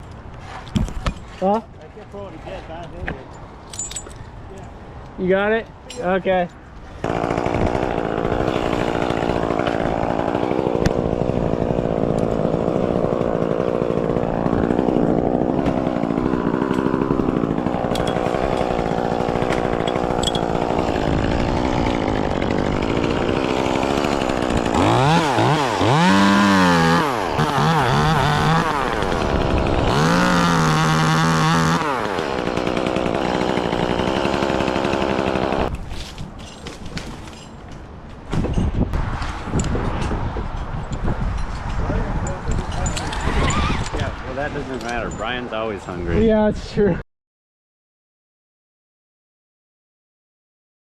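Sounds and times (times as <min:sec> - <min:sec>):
chainsaw cutting limbs: 0:06.9 - 0:37.7, 0:39.0 - 0:46.1.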